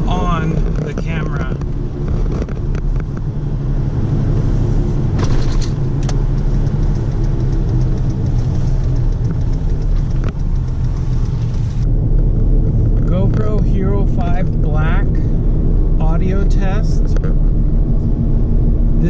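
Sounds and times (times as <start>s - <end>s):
vehicle engine running: 0.0s - 19.0s
sharp clicks: 5.3s - 11.9s.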